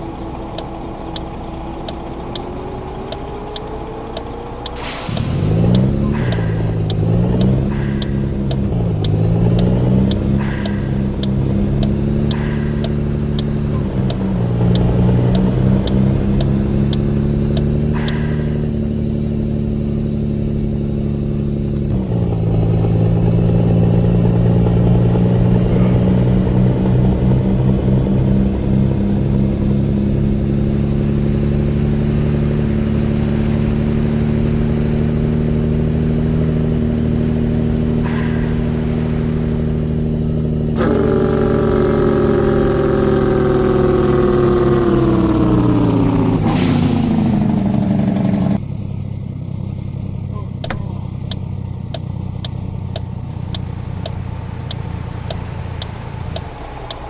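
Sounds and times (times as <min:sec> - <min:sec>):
truck engine drone: 0:00.0 - 0:57.0.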